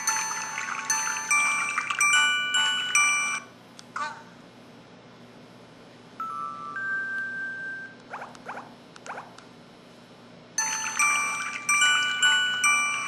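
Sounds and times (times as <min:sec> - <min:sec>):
bright chiming jingle: 0:00.0 - 0:03.4, 0:10.6 - 0:13.0
rising bubbly blips: 0:08.1 - 0:09.4.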